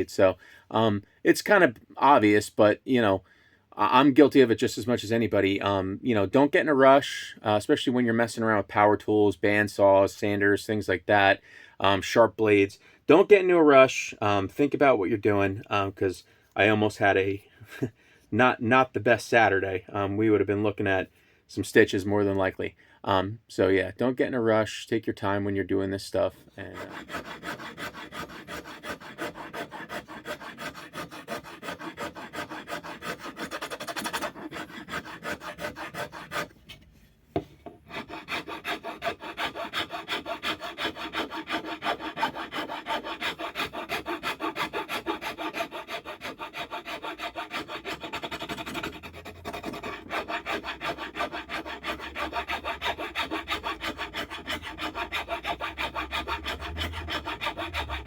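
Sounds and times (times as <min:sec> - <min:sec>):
wood rasp on wooden handle: 0:26.2 - 0:36.8, 0:37.8 - 0:58.0.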